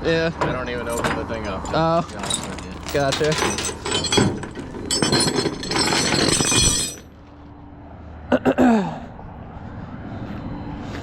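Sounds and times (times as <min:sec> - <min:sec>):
metallic clinking and rattling: 0:00.8 - 0:07.2.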